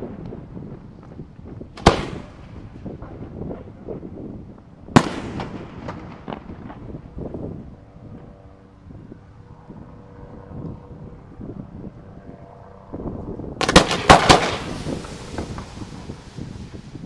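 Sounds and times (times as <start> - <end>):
fireworks booming: 0.0 - 4.3, 4.9 - 7.4, 13.6 - 17.0
fireworks pops and crackles: 0.0 - 7.3, 13.6 - 17.0.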